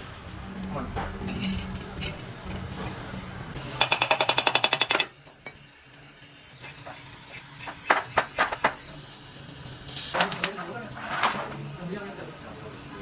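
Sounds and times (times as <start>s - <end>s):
sharp metallic clinks: 3.6s - 13.0s.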